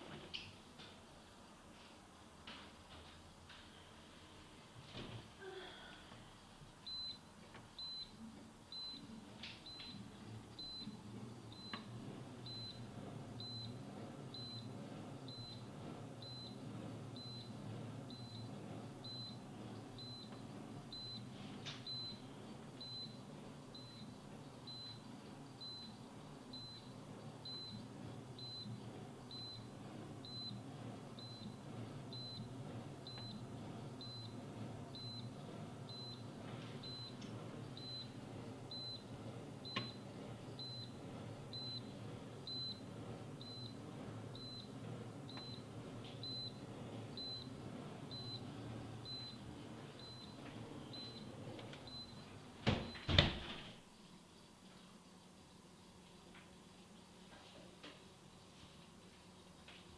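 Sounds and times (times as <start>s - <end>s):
fridge running hum: 0.0s - 59.9s
refrigerator alarm beeping: 6.8s - 16.6s, 17.2s - 27.8s, 28.4s - 33.4s, 34.0s - 44.7s, 45.3s - 46.6s, 47.2s - 53.8s.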